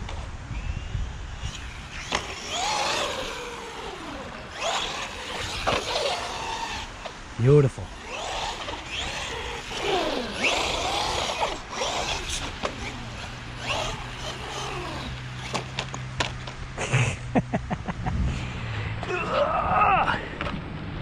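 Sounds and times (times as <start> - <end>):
electric motor whining: 0.5 - 16.8.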